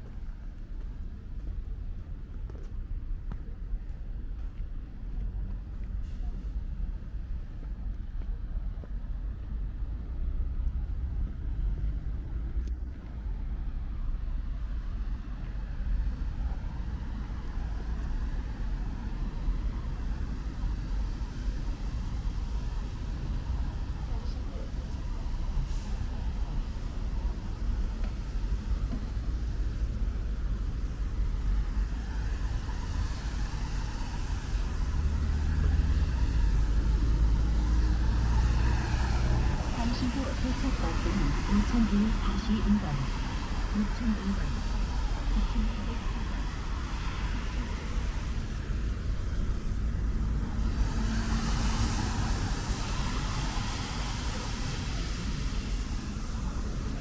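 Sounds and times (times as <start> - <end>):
road noise: 0.0 - 57.0
vehicle engine rumble: 0.0 - 57.0
vehicle passing: 33.2 - 57.0.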